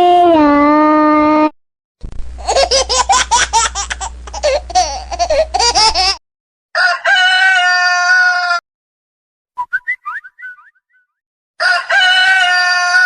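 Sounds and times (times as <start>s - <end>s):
warbling laughter-like calls: 2.4s - 6.2s
rooster crowing: 6.8s - 8.6s, 11.6s - 13.0s.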